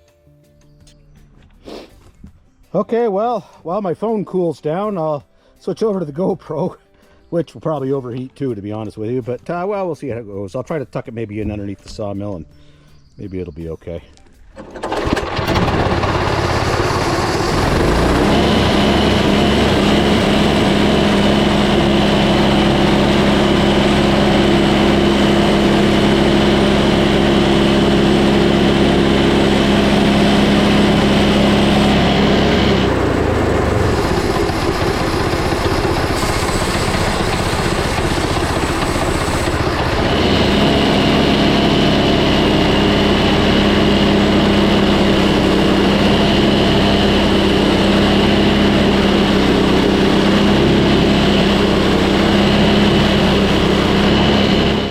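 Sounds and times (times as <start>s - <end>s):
sawmill engine whining: 14.6s - 54.9s.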